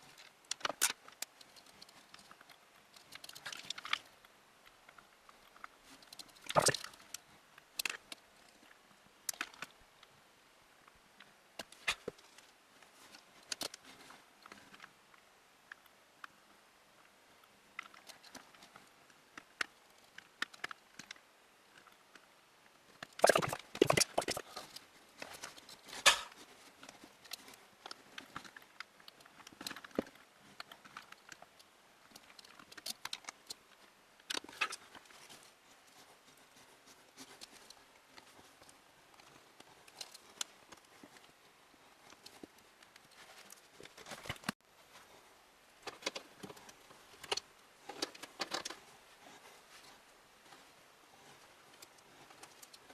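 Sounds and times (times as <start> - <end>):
clicks and knocks of computer hardware: 25.9 - 26.4.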